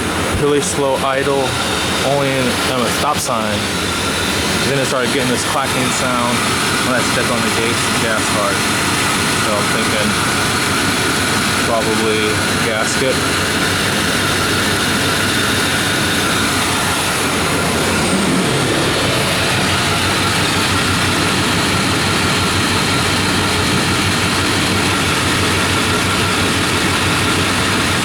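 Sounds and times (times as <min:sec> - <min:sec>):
truck engine running: 0:00.0 - 0:28.0.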